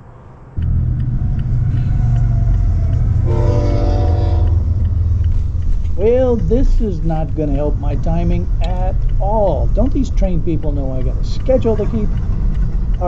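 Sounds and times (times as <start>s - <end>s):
train rumbling past: 0.6s - 13.0s
train horn: 2.7s - 4.8s.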